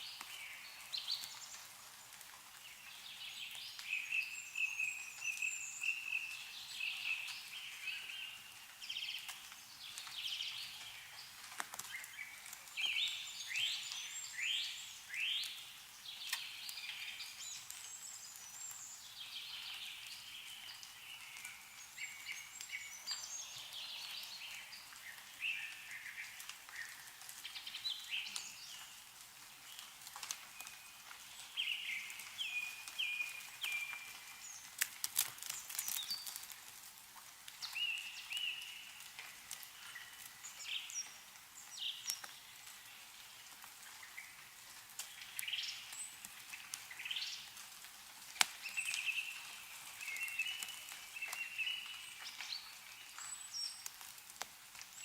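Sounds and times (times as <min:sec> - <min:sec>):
songbirds chirping: 0:00.0 - 0:55.0
water dripping ticks: 0:00.0 - 0:55.0.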